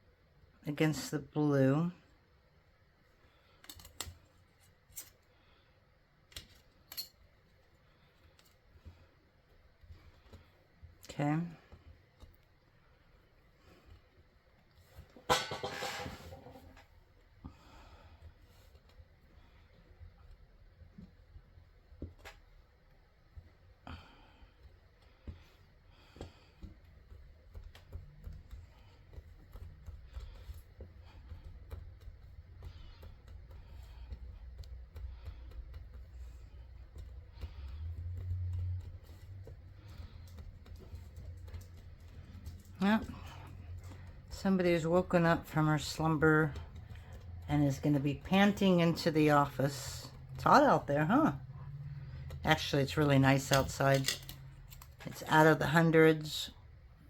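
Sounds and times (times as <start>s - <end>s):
faint low hum: 0.0s - 57.0s
small tools clicking and tapping: 3.6s - 4.3s, 6.3s - 7.3s, 53.4s - 55.2s.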